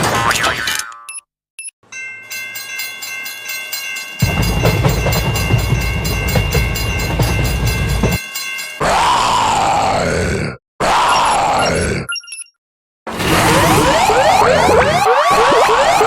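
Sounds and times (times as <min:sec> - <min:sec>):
rumble of a passing train: 0:03.8 - 0:08.2
wheel clacking: 0:04.2 - 0:08.2.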